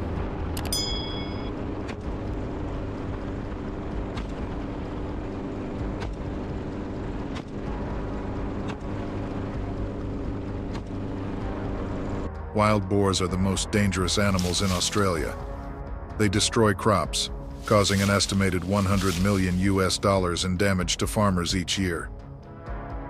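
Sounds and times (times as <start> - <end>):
helicopter engine and rotor hum: 0.0 - 22.6.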